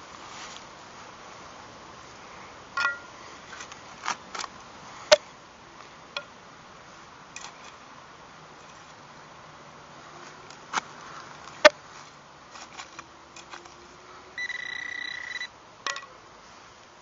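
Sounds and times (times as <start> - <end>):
metal detector high beep: 14.4 - 15.5.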